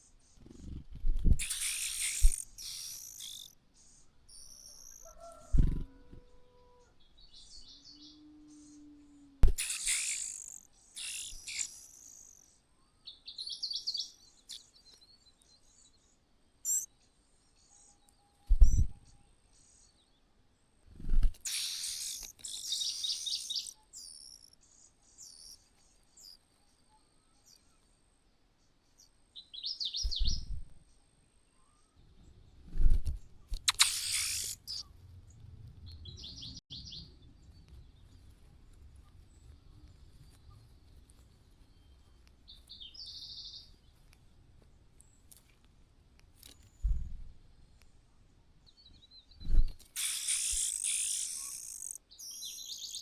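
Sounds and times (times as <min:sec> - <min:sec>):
birds chirping in trills: 0:00.0 - 0:20.2, 0:21.4 - 0:28.2, 0:28.9 - 0:45.5, 0:46.5 - 0:53.0
dull low thumps: 0:18.5 - 0:19.0, 0:30.1 - 0:30.8
rustling noise: 0:18.5 - 0:19.0, 0:32.2 - 0:36.1, 0:37.2 - 0:47.5.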